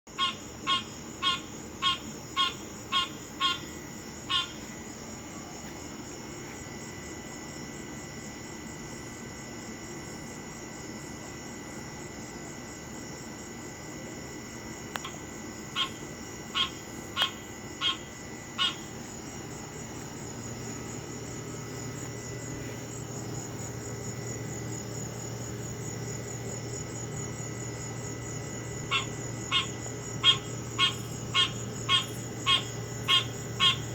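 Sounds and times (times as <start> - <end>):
insects chirping: 0.1 - 33.9
animal honking calls: 28.8 - 33.9.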